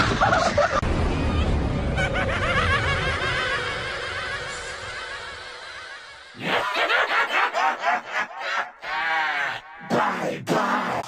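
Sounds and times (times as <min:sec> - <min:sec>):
person laughing hard: 0:00.0 - 0:00.8, 0:01.9 - 0:05.8, 0:06.4 - 0:09.6.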